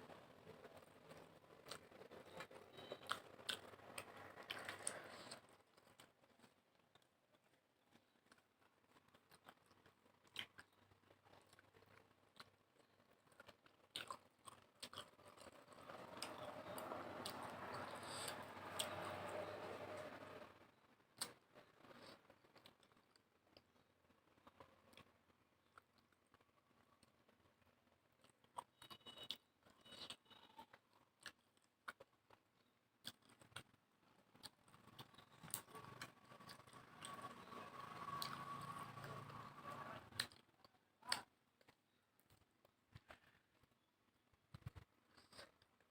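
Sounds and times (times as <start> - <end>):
person chewing with mouth clicks: 0.7 - 20.1, 28.2 - 43.4.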